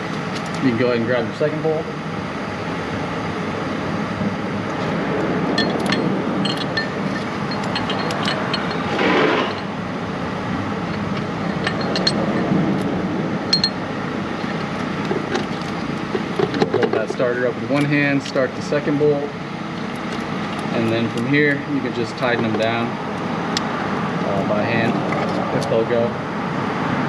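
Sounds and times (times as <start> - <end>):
steady background hum: 0.0 - 27.0
light metallic clinks and taps: 5.6 - 9.7, 10.9 - 12.6, 13.5 - 13.8
metal scraping rub: 5.6 - 9.8.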